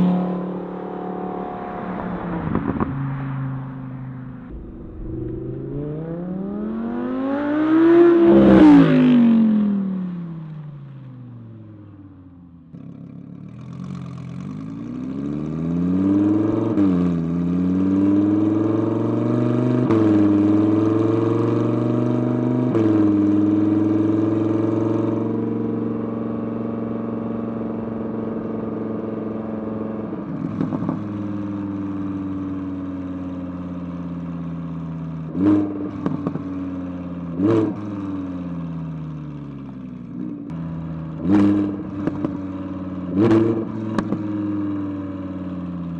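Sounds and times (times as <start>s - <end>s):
engine throttle blips: 0.0s - 9.0s
car engine accelerating: 0.0s - 11.9s, 12.9s - 45.9s.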